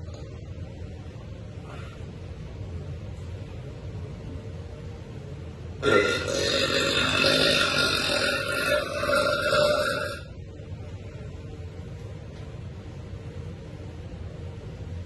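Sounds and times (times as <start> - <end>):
woman burping: 5.8 - 10.3.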